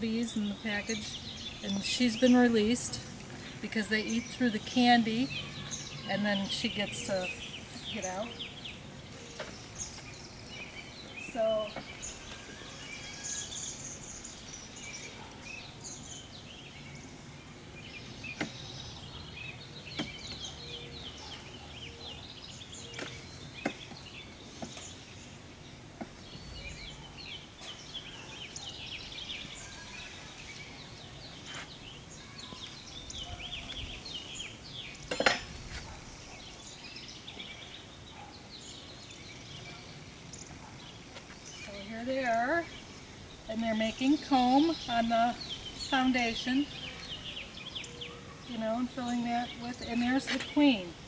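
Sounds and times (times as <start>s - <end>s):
small birds chirping: 0.0s - 51.0s.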